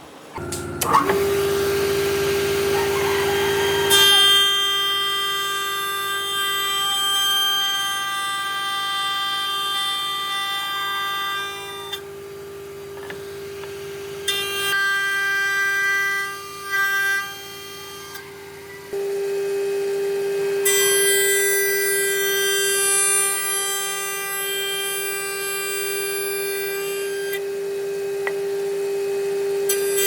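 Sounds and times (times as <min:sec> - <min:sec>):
power tool motor whining: 0:00.4 - 0:08.6.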